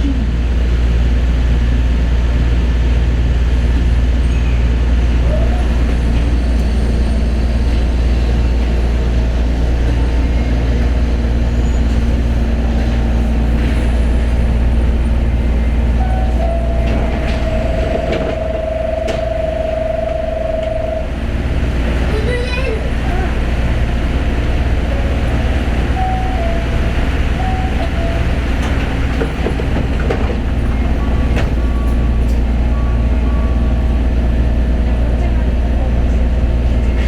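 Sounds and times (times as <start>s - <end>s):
train running gear rumble: 0.0s - 37.0s
train motor whine: 3.4s - 21.9s.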